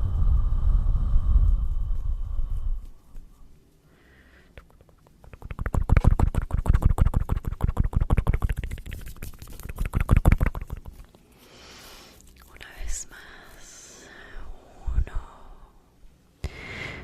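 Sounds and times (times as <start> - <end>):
scratchy clicks at microphone: 4.6 - 11.2.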